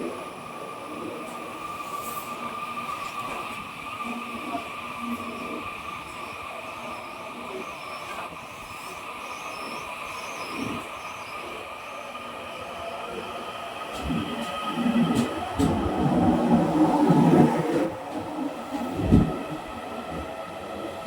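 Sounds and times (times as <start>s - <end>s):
electric train high whine: 0.0s - 21.0s
rail noise: 8.1s - 21.0s.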